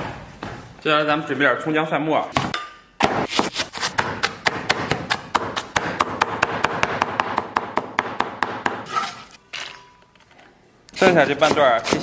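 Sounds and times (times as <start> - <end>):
knife chopping on cutting board: 2.4 - 8.9, 11.3 - 12.0.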